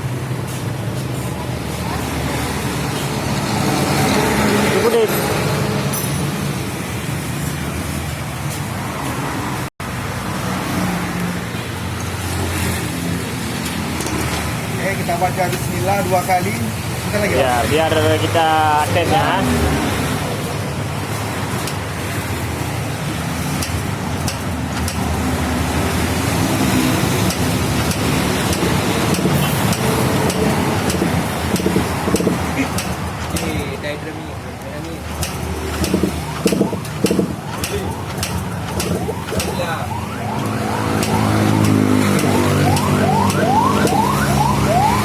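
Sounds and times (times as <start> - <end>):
two-stroke motorcycle engine running: 27.0 - 33.6, 35.0 - 39.7
sharp ticks: 34.6 - 39.7, 40.4 - 44.2.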